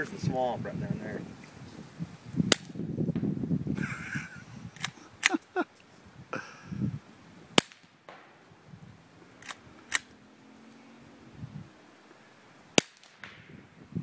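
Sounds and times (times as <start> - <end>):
suppressed gunshots: 2.5 - 2.8, 7.6 - 8.4, 12.8 - 13.6.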